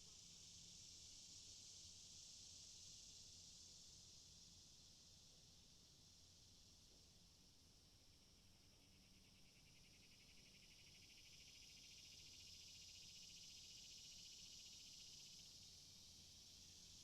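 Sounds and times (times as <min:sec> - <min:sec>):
cicadas buzzing: 0:09.8 - 0:17.0.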